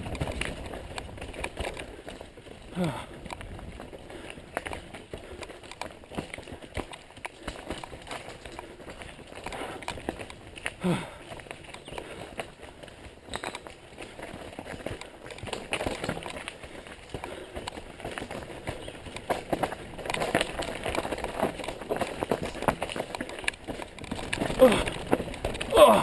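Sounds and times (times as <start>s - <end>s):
mountain bike rattling: 0.0s - 26.0s
tyre noise: 0.0s - 26.0s.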